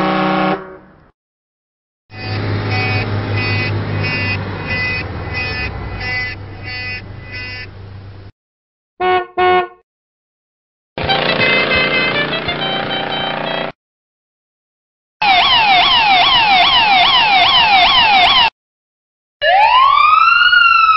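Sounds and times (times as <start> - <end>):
double horn honk: 0.0 - 1.0, 2.1 - 7.9, 9.0 - 9.8, 11.0 - 13.8
long horn blast: 0.0 - 1.0, 2.1 - 7.8, 9.0 - 9.8, 11.0 - 13.7
horn beeping: 2.1 - 8.3, 9.0 - 9.8, 11.0 - 13.8.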